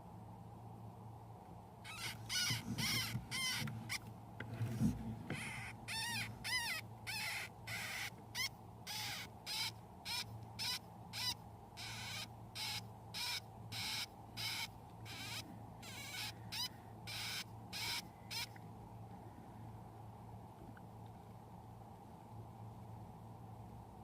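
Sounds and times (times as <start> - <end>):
hamster pups squeaking: 1.9 - 4.0, 4.8 - 18.6.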